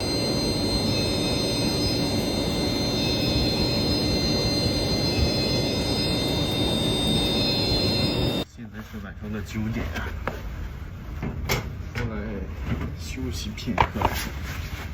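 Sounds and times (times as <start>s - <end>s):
dense machinery running noise: 0.0s - 8.4s
high-pitched machine whines: 0.0s - 8.5s.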